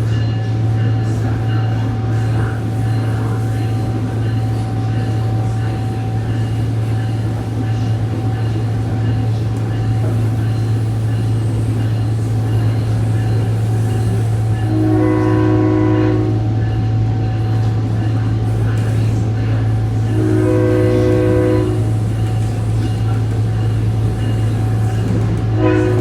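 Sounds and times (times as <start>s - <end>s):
train engine droning: 0.0s - 26.0s
train horn: 14.6s - 16.6s, 20.0s - 22.1s, 25.5s - 26.0s.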